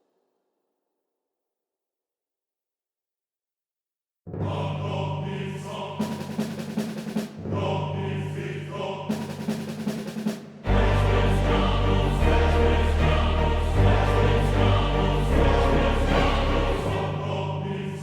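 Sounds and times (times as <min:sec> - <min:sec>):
choir: 0:04.4 - 0:18.0
timpani: 0:04.4 - 0:18.0.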